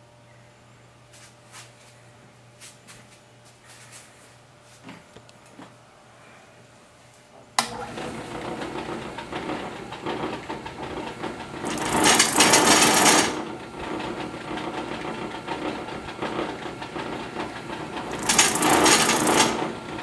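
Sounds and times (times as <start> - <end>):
motor switch click: 7.6 - 7.8
electric motor humming and rattling: 7.6 - 20.0.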